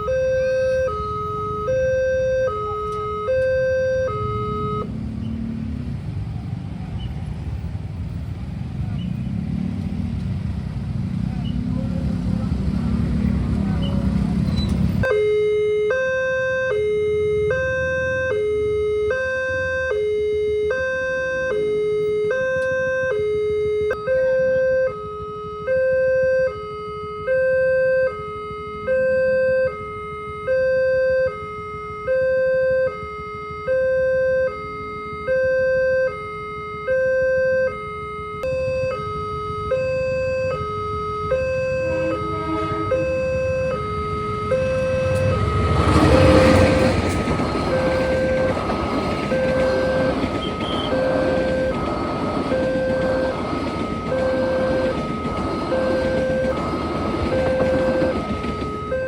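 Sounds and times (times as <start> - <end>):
level crossing two-tone alarm: 0.0 - 4.9, 15.0 - 59.0
passing train rumble: 0.0 - 15.1, 38.3 - 59.0.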